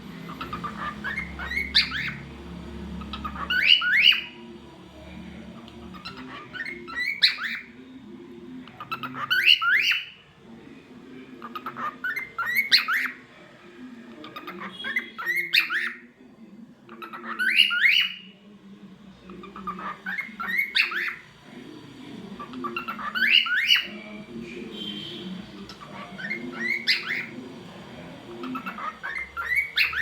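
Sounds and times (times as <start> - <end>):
cockatiel chirping and squawking: 0.2 - 2.2, 3.0 - 4.4, 5.6 - 7.8, 8.7 - 10.2, 11.4 - 13.2, 14.2 - 16.0, 16.9 - 18.3, 19.4 - 21.2, 22.4 - 24.0, 24.8 - 27.3, 28.4 - 30.0.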